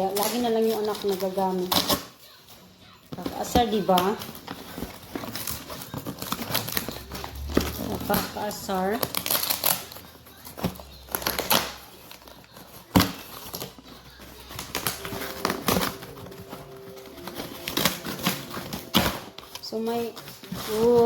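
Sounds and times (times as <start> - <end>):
cardboard packaging rustling: 0.0 - 21.0.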